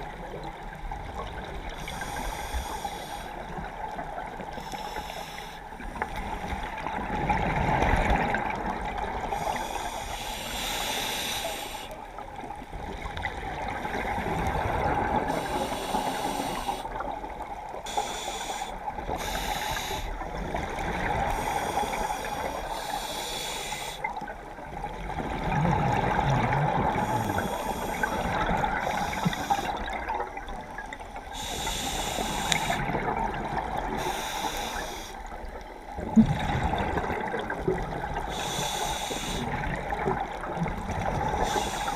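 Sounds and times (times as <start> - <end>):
regulator hissing inhalations: 1.8 - 3.4, 4.6 - 5.6, 9.3 - 12.0, 15.3 - 17.0, 17.8 - 20.2, 21.3 - 24.1, 27.0 - 29.8, 31.2 - 32.9, 34.0 - 35.3, 38.3 - 39.6, 41.4 - 41.9.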